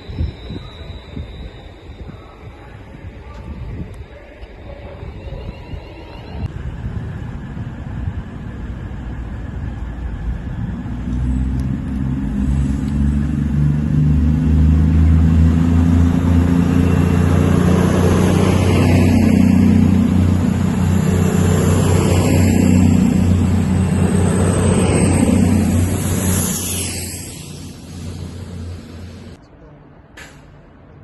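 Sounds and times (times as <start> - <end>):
train running past: 0.0 - 29.4.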